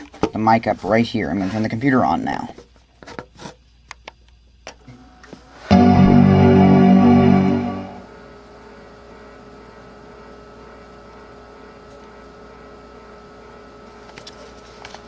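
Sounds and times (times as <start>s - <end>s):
computer startup chime: 5.7s - 8.2s
faint held tone: 5.7s - 8.2s.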